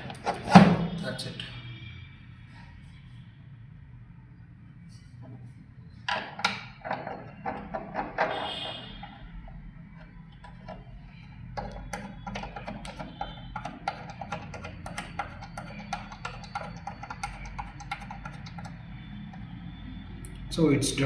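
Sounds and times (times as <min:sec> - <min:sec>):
sharp clicks and taps: 0:11.4 - 0:19.5.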